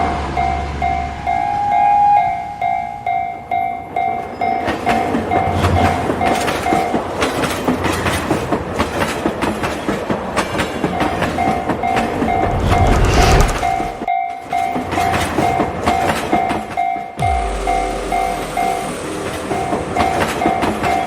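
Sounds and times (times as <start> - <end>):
railroad crossing bell dinging: 0.0 - 7.4, 14.1 - 21.0
train wheels clattering over rails: 4.4 - 17.2.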